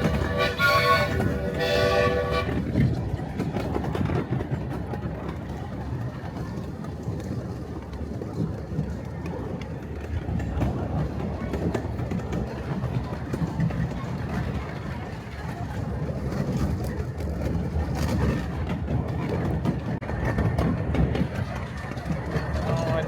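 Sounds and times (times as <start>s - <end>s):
train chime whistle: 0.0s - 2.6s
train rumbling: 0.0s - 23.0s
wheels clicking on rail joints: 0.0s - 23.0s.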